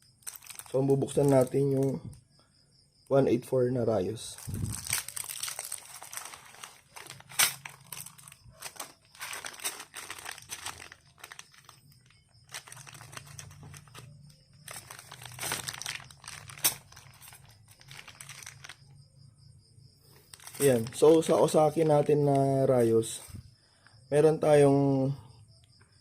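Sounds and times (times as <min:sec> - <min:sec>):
plastic packaging crinkling: 0:00.0 - 0:02.2, 0:04.2 - 0:19.0, 0:20.3 - 0:22.5.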